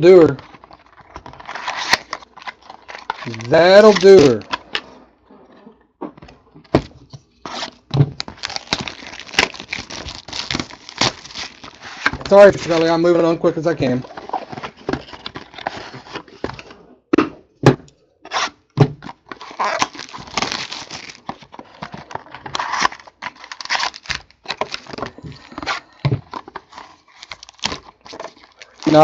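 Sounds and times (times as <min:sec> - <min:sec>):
plastic wrapping crinkling: 0:00.4 - 0:04.8, 0:08.2 - 0:15.8, 0:19.3 - 0:29.0.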